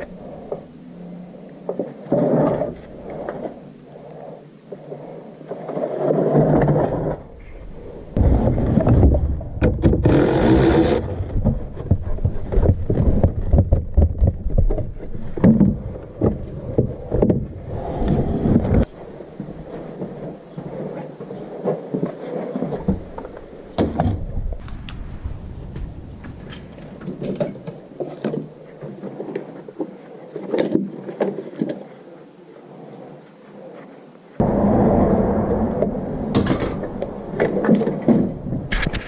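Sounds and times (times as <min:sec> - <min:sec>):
low rumble: 0:24.2 - 0:28.0, 0:34.4 - 0:39.0.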